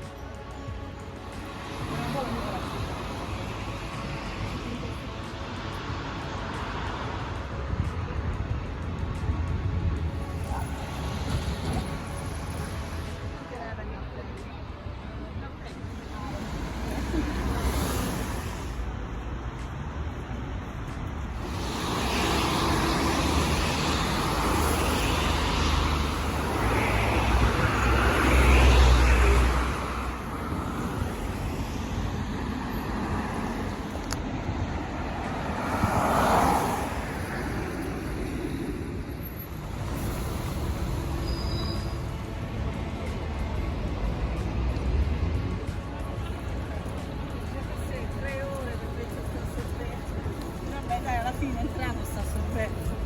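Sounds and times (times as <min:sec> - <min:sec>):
vehicles passing with low rumble: 0:00.0 - 0:53.0.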